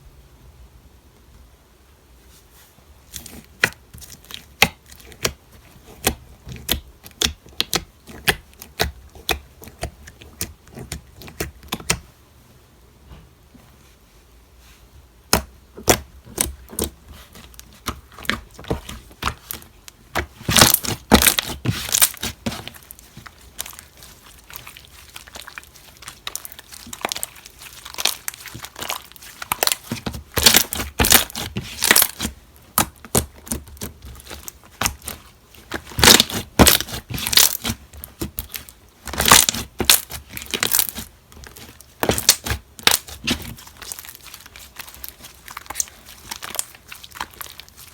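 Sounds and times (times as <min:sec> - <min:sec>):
slime crackling and popping: 0:15.3 - 0:47.9.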